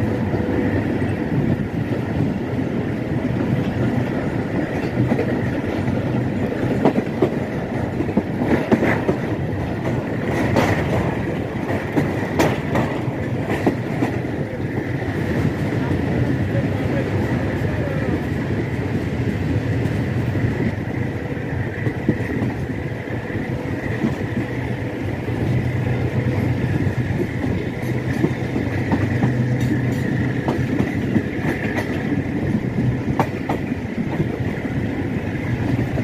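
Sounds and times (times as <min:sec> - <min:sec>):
train wheels rumbling on rails: 0:00.0 - 0:36.0
wheels clicking over rail joints: 0:03.5 - 0:16.2, 0:26.4 - 0:34.7.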